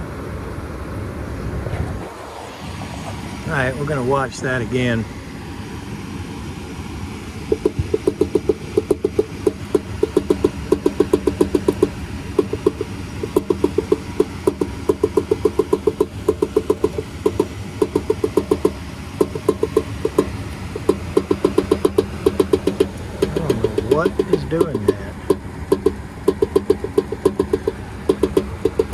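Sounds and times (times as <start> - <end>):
fast metallic rattle: 7.0 - 28.9.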